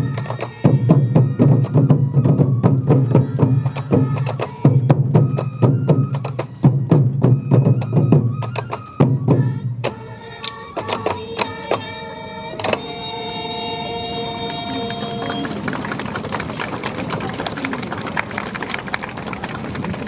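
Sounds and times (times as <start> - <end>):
taiko drums beating fast: 0.0 - 10.0
bamboo flute playing: 0.0 - 16.8.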